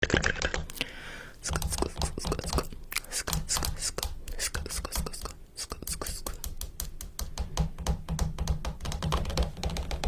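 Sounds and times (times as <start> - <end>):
sharp clicks and taps: 1.5 - 10.0.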